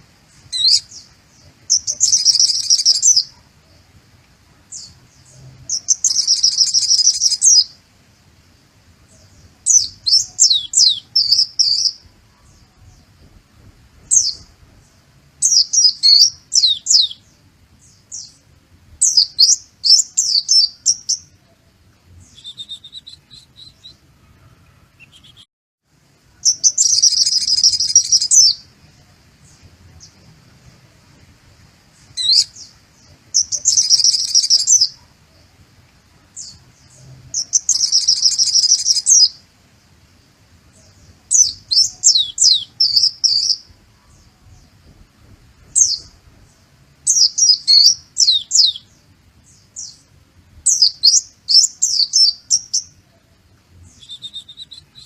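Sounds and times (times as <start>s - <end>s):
bird singing high song: 0.0s - 25.5s, 26.1s - 55.0s.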